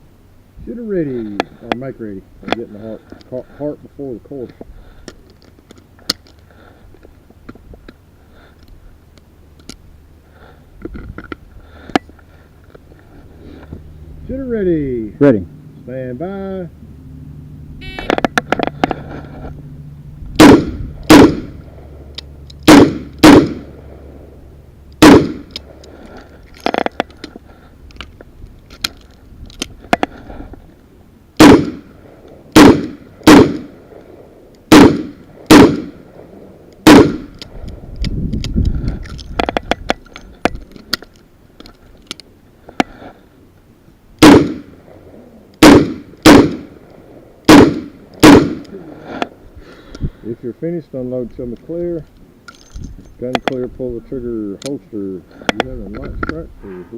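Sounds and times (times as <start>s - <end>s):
gun handling clicks: 4.5s - 7.1s, 8.6s - 9.9s, 24.9s - 30.2s, 36.8s - 42.9s, 52.0s - 53.6s.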